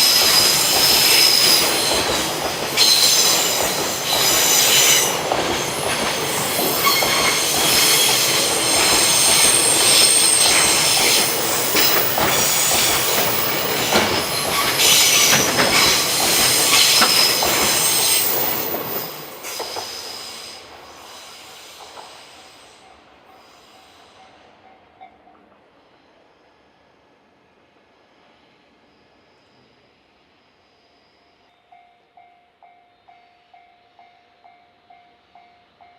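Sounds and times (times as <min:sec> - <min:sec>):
wheel squeal: 0:00.0 - 0:02.0, 0:06.2 - 0:20.6
train wheels rumbling on rails: 0:00.0 - 0:24.4.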